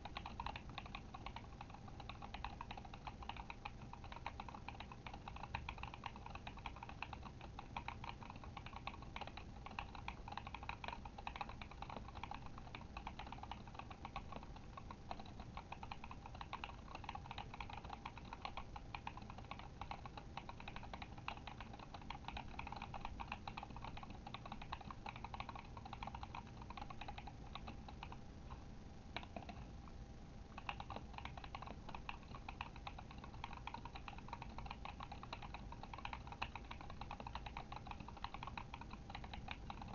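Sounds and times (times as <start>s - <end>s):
mechanical keyboard typing: 0.0s - 28.2s, 29.1s - 29.6s, 30.6s - 39.9s.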